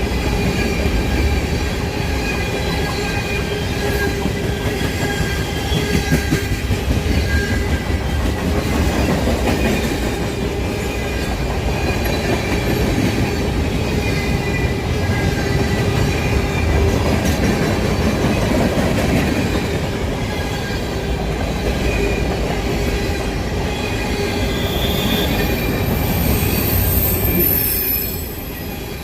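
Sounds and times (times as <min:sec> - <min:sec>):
freight train cars rumbling: 0:00.0 - 0:29.0
wheels squealing on rails: 0:00.0 - 0:29.0.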